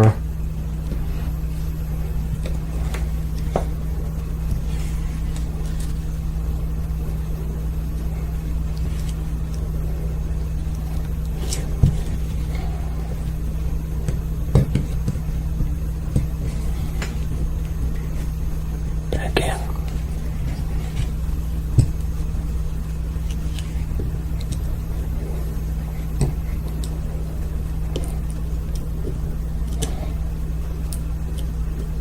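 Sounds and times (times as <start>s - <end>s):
steady low hum: 0.0s - 32.0s.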